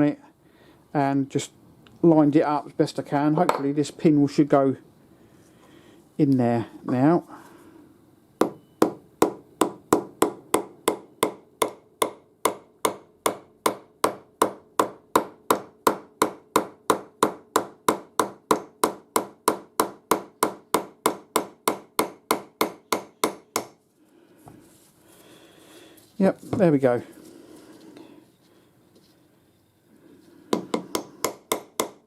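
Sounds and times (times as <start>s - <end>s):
hammer tapping steel pin: 30.5s - 32.0s.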